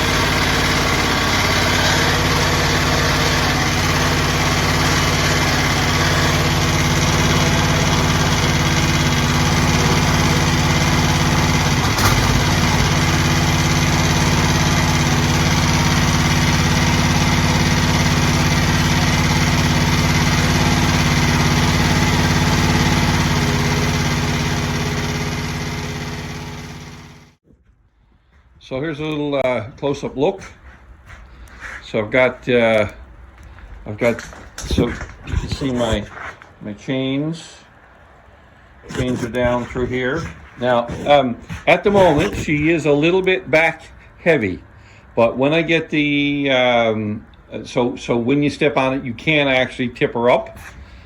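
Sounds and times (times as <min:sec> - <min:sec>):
engine idling: 0:00.0 - 0:27.4.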